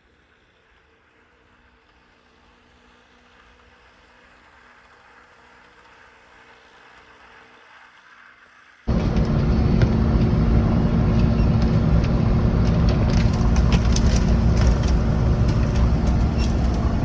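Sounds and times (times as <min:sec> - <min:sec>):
vehicle engine running: 0:08.9 - 0:17.0.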